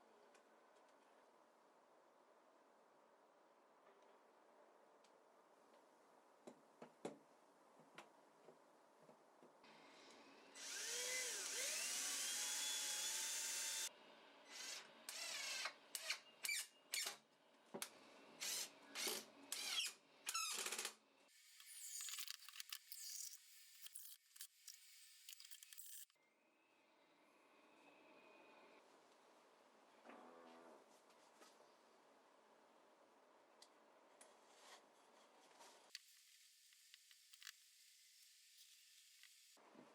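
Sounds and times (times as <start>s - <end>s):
power drill running: 10.6s - 13.9s.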